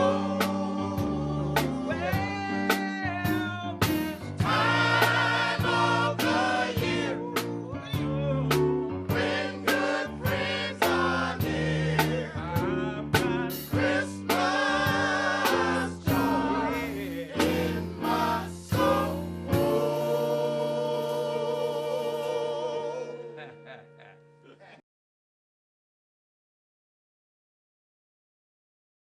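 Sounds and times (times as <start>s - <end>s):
men's choir singing: 0.0s - 2.3s, 4.2s - 7.7s, 8.5s - 23.6s
sharp beat hits: 8.5s - 20.4s.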